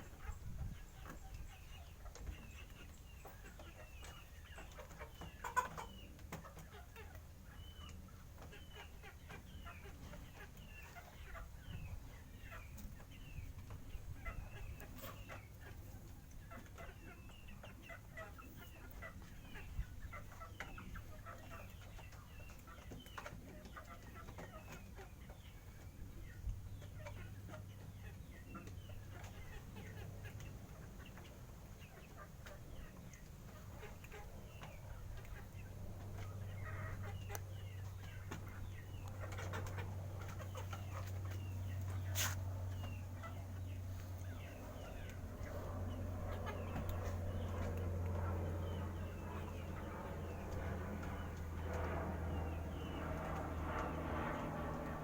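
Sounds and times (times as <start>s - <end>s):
animals clucking and chirping: 0.0s - 55.0s
low steady hum: 6.0s - 55.0s.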